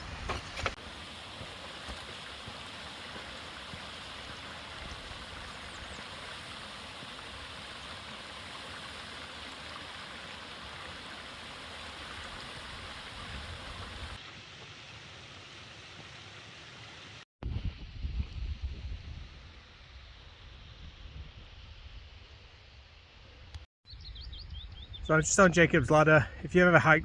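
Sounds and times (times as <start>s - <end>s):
stream water flowing: 0.0s - 17.1s.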